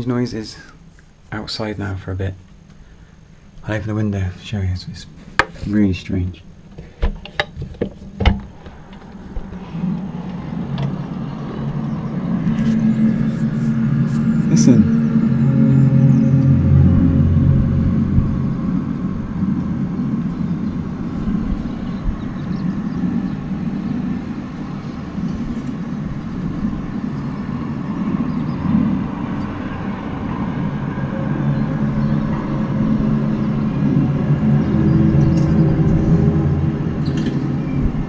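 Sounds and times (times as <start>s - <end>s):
loud low drone in sky: 8.2s - 38.0s.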